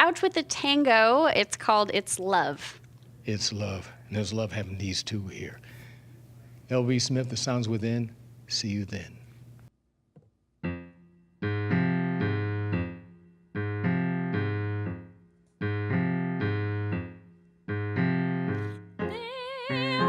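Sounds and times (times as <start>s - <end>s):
piano chords in tango rhythm: 10.6s - 19.2s
wavering singing voice: 19.1s - 20.0s.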